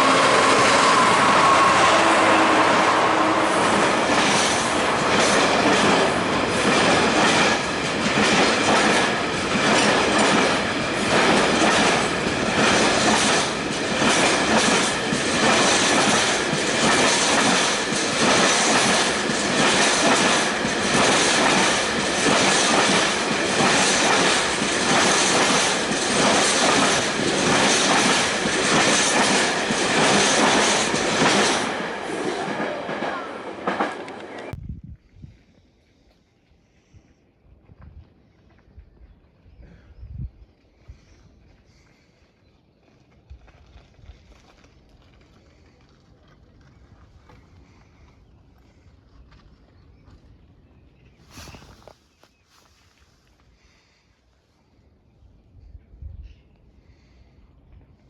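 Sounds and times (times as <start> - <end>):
train wheels clattering over rails: 0.0 - 34.6.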